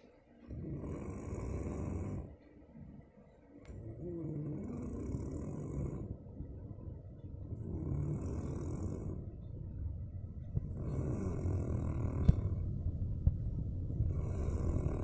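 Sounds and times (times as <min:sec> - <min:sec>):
quiet breath: 0:00.0 - 0:09.8, 0:10.4 - 0:15.0
person snoring: 0:00.5 - 0:02.3, 0:03.7 - 0:06.2, 0:07.6 - 0:09.3, 0:10.6 - 0:12.6, 0:14.1 - 0:15.0.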